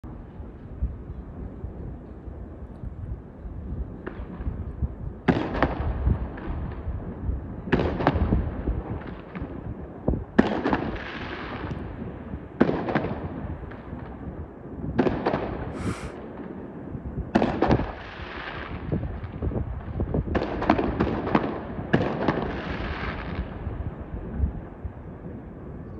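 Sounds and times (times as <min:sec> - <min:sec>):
firework crackling: 0:15.8 - 0:16.2.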